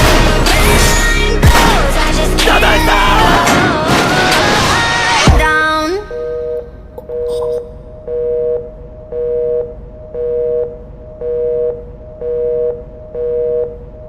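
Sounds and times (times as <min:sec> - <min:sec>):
telephone busy signal beeps: 0:06.2 - 0:13.8.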